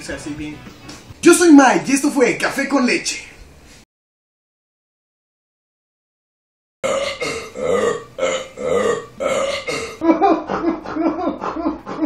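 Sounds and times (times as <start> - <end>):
person belching: 6.8 - 10.0.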